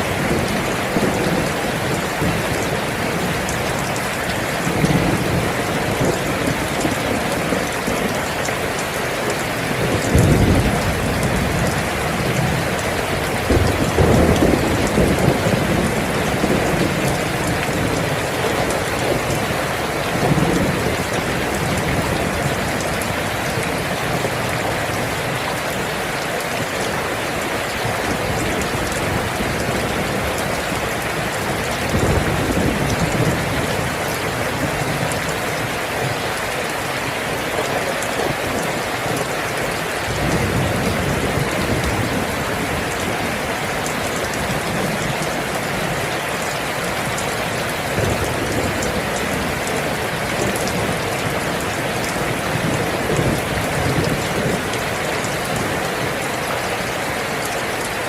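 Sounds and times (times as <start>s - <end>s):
heavy rain: 0.0s - 58.0s.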